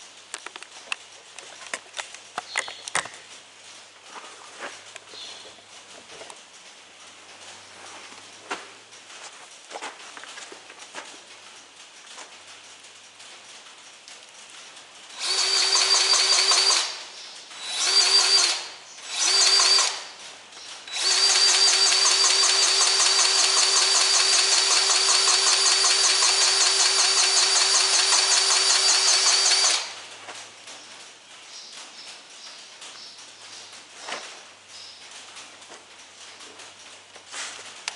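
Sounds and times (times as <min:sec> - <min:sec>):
grease gun motor whine: 0:15.1 - 0:17.0, 0:17.6 - 0:20.1, 0:20.9 - 0:30.0.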